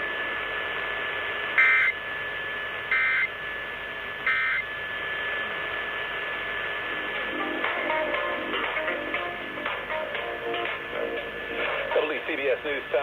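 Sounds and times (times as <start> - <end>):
radio whistle and hiss: 1.4 - 2.3, 2.9 - 3.5, 4.2 - 5.8.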